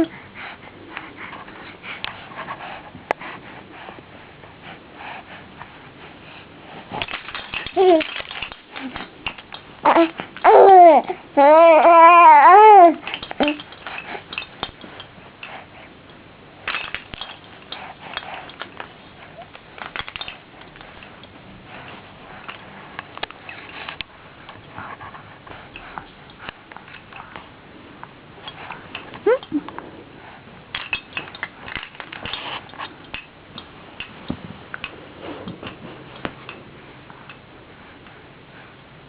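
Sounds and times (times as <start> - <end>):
toy rattles clicking: 6.9 - 15.6, 16.7 - 21.2, 30.7 - 34.9
baby cooing: 9.8 - 13.6.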